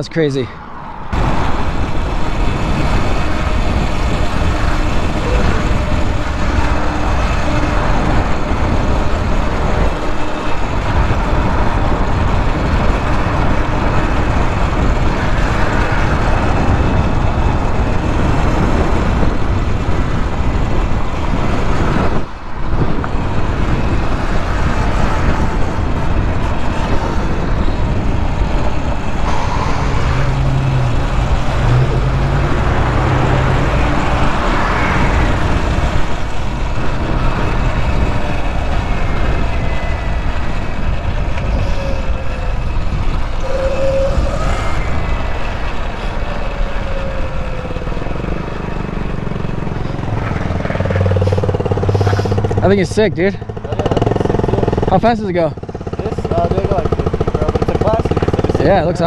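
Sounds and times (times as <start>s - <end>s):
wind rushing over microphone: 0.0s - 59.0s.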